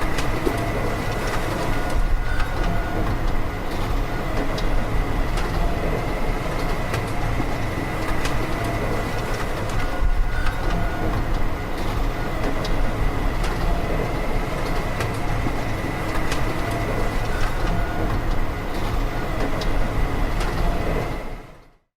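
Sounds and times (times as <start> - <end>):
machinery running: 0.0 - 21.4.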